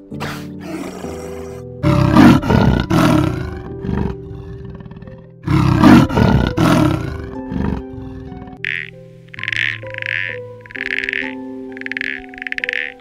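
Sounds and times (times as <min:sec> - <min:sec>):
background music: 0:00.0 - 0:13.0
large animal roaring: 0:00.2 - 0:08.6.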